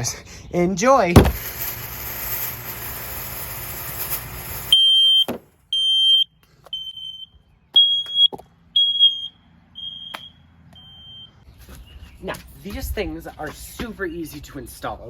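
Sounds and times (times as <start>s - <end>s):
smoke alarm beeping: 4.6s - 11.4s.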